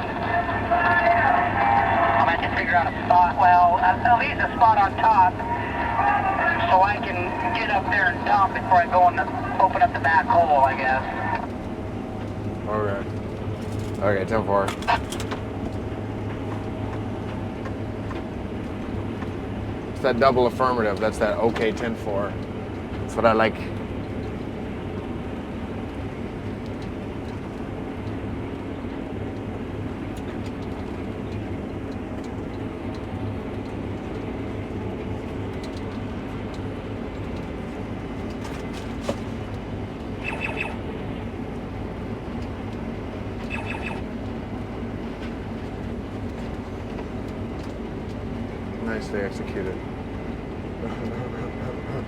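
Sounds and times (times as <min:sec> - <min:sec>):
combine engine and threshing drone: 0:00.0 - 0:52.0
short high chirps: 0:40.2 - 0:40.8, 0:43.5 - 0:44.0.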